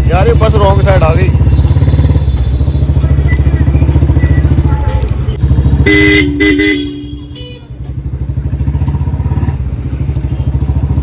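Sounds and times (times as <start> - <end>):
vehicle horn honking: 4.5 - 7.8.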